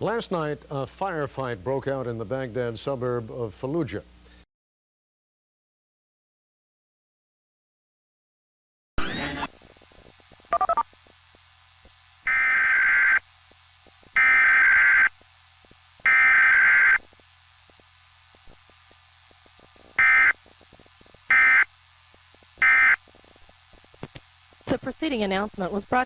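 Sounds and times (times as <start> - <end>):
buzzing data bursts: 9.0 - 26.0.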